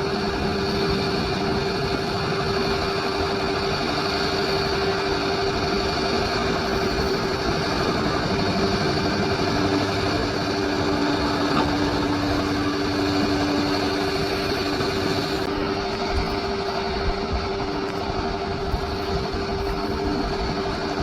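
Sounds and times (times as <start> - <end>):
diesel engine running: 0.0 - 21.0
steady whine: 0.0 - 21.0.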